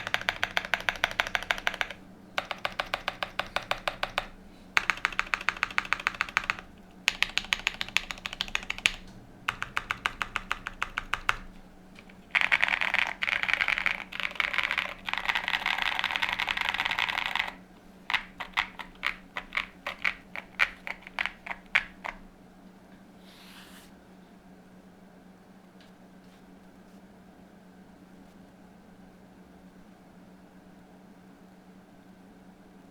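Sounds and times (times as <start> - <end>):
mechanical keyboard typing: 0.0 - 22.2.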